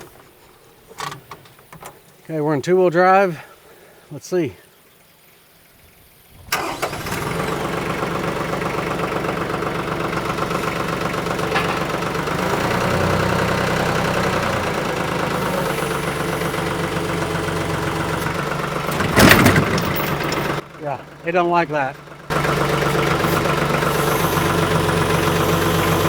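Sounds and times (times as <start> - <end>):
tractor diesel engine under load: 6.5 - 26.0.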